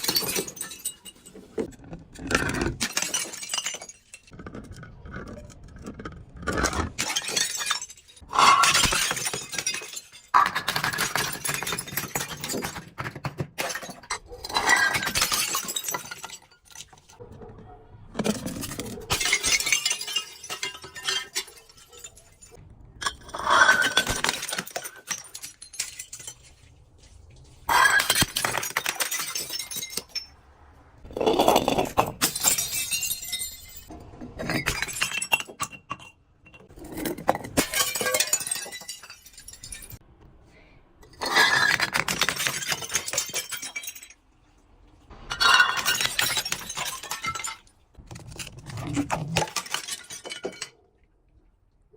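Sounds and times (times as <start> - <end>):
glass shards tinkling: 0.0 - 1.6, 27.7 - 30.4, 31.5 - 33.9, 34.5 - 40.0
glass bottles smashing: 0.0 - 4.8, 6.6 - 17.2, 18.2 - 27.0, 27.7 - 30.4, 31.1 - 40.0, 41.1 - 44.2, 45.1 - 50.8.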